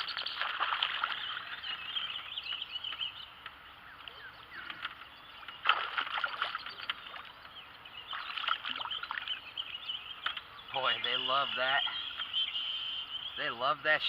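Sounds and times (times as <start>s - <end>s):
fish splashing in water: 0.0s - 2.0s, 5.5s - 7.3s, 8.1s - 9.4s
birds chirping: 0.0s - 14.0s.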